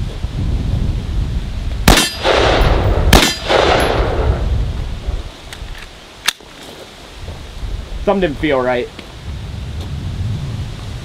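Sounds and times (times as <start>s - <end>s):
gunshots: 1.8s - 4.4s
steel target clanging: 1.9s - 4.2s.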